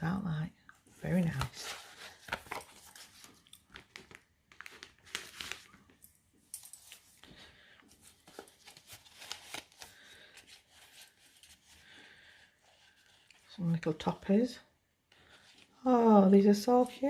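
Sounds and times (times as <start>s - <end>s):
paper and plastic crinkling: 1.0s - 13.5s.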